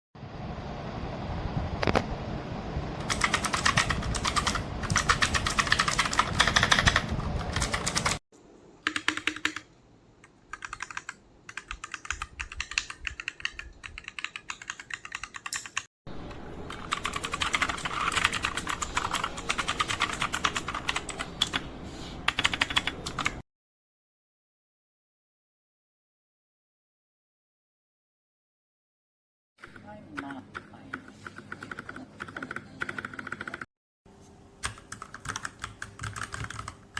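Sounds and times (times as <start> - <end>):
low background hum: 0.2 - 23.4, 29.6 - 36.9
mechanical keyboard typing: 3.0 - 8.2, 8.8 - 15.9, 16.7 - 23.4, 29.6 - 33.7, 34.6 - 36.9.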